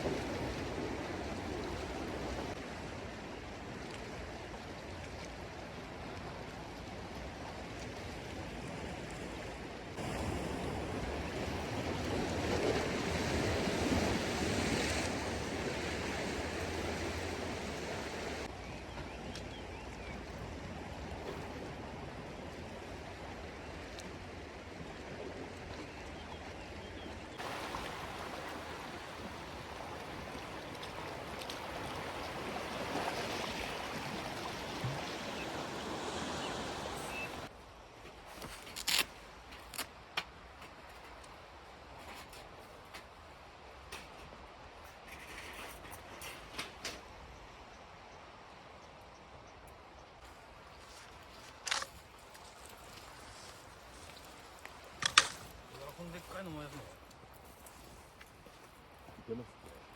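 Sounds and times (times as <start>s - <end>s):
sea waves on the shore: 0.0s - 48.4s, 50.2s - 59.9s.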